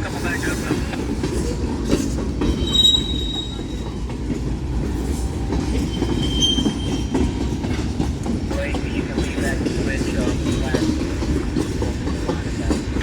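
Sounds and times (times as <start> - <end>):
wheels rumbling on rail: 0.0 - 13.0
high-pitched wheel squeals: 2.5 - 4.0, 5.8 - 7.2.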